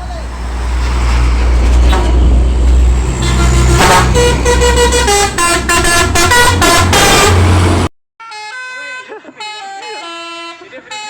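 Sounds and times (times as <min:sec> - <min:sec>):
truck engine running: 0:00.0 - 0:07.9
multi-tone musical truck horn: 0:03.0 - 0:11.0.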